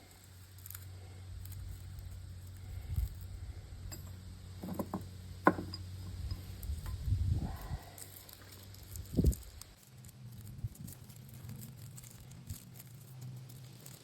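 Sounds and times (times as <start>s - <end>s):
steady low hum: 0.0s - 14.0s
metal clinks and taps: 3.9s - 7.0s.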